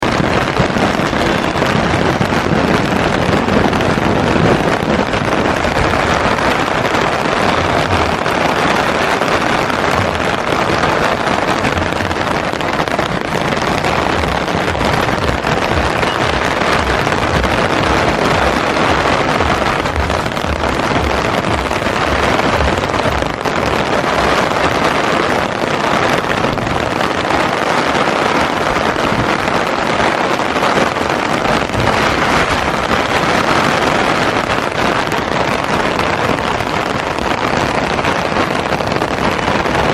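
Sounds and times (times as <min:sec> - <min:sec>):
low thuds: 0:00.0 - 0:27.0, 0:31.0 - 0:35.6
rain on an umbrella: 0:00.0 - 0:39.9.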